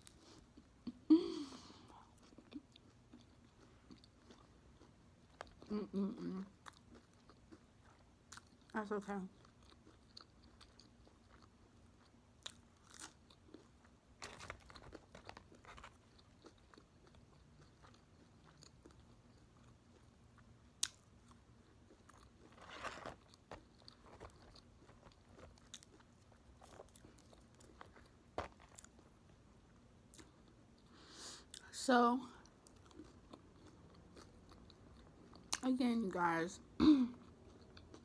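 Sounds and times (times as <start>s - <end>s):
chewing and crunching food: 1.6s - 38.0s.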